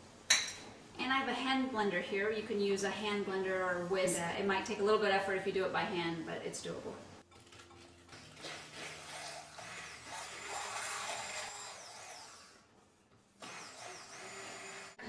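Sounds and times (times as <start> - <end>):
electric hand blender running: 8.3 - 12.7, 13.4 - 15.0.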